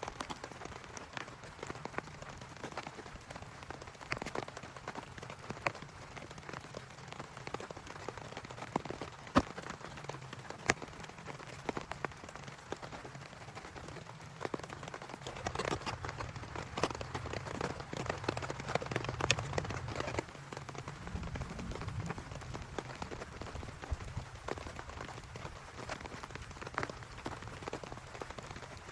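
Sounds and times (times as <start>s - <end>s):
raindrops tapping on surface: 0.0s - 28.9s
steady rain wash: 0.0s - 28.9s.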